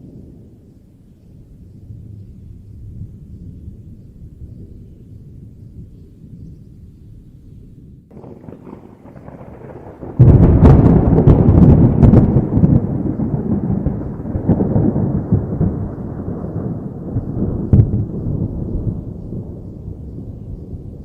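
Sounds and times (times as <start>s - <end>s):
low thunder rumble: 0.0s - 21.0s
thunder crack: 8.1s - 21.0s.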